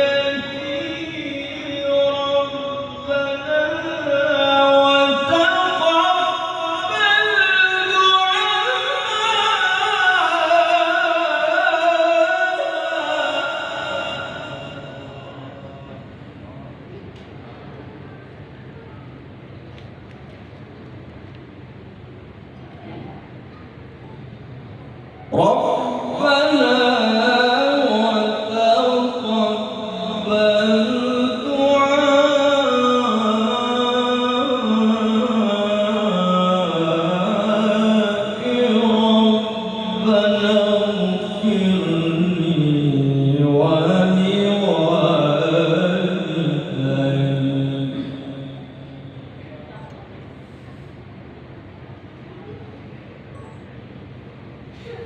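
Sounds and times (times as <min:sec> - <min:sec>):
man reciting melodically: 0:00.0 - 0:16.2, 0:25.3 - 0:49.7.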